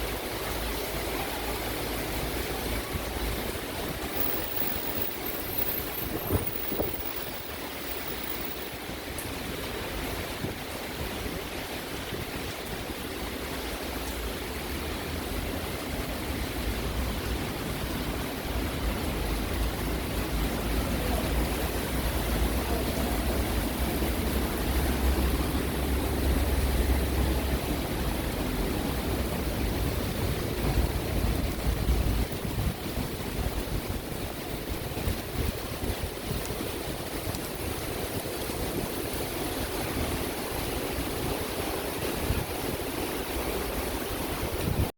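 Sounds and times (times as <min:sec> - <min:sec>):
heavy rain: 0:00.0 - 0:44.9
wind buffeting microphone: 0:02.7 - 0:13.0, 0:23.4 - 0:43.4.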